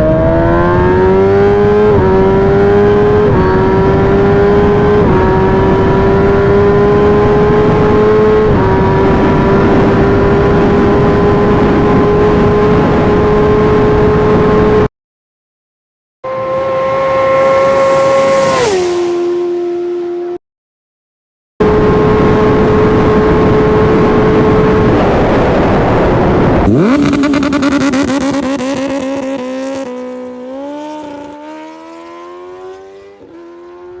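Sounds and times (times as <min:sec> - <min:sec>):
motorcycle passing at high speed: 0:00.0 - 0:14.9, 0:16.3 - 0:20.4, 0:21.6 - 0:34.0
motorcycle upshifting: 0:26.6 - 0:31.6.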